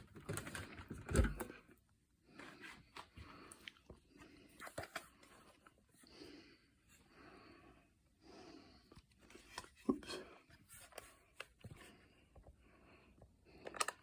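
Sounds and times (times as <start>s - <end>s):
plastic clicks and rustles: 0.0s - 1.6s, 4.6s - 5.7s, 13.5s - 14.0s.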